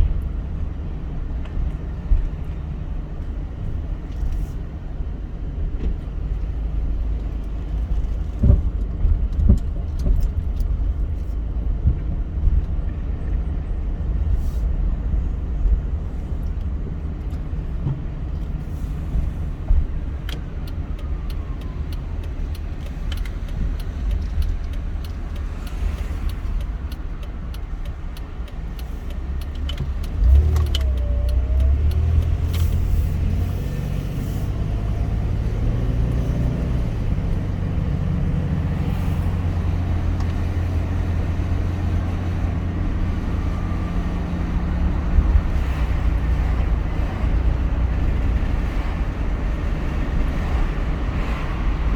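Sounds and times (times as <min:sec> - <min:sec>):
car road and engine rumble: 0:00.0 - 0:51.9
small clicks and knocks: 0:19.7 - 0:32.8.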